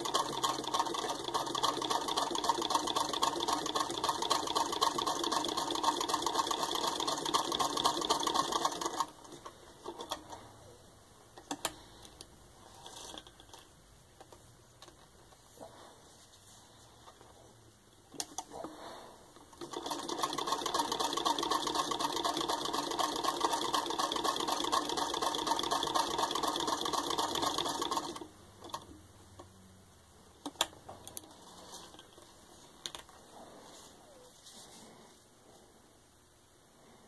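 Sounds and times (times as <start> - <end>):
sewing machine clattering: 0.0 - 10.4, 19.5 - 28.9.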